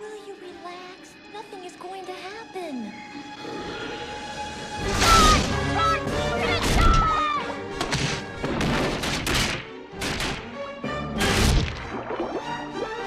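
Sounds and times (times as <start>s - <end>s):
dramatic orchestral music: 0.0s - 13.0s
wood smashing: 4.8s - 5.7s, 6.4s - 7.2s, 7.8s - 10.4s.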